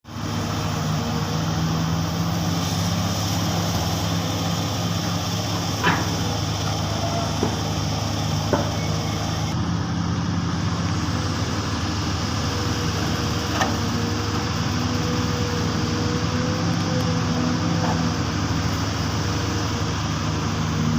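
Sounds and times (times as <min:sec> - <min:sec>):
excavator diesel engine running: 0:00.1 - 0:20.9.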